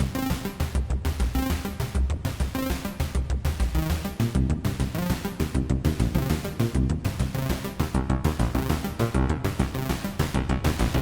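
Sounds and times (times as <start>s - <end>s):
synthesizer bassline: 4.4s - 11.0s.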